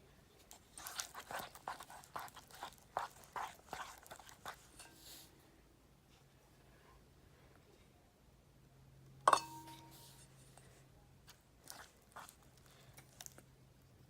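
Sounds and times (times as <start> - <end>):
slime being stirred: 0.4 - 5.3, 11.6 - 13.4.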